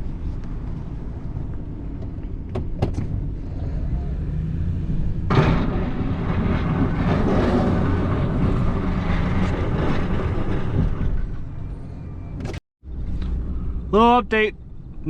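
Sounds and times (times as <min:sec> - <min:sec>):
truck engine hum: 0:00.0 - 0:15.0
rushing drive noise: 0:04.7 - 0:11.7.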